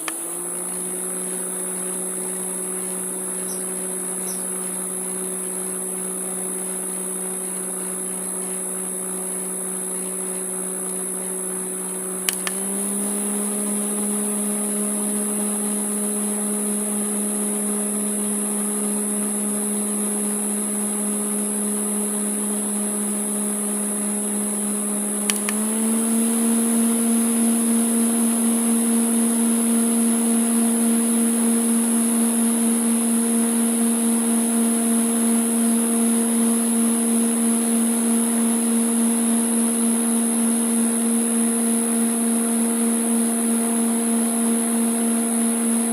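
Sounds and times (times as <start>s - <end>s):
electric fan motor humming: 0.0s - 45.9s
fan switch click: 12.3s - 12.6s, 25.3s - 25.6s.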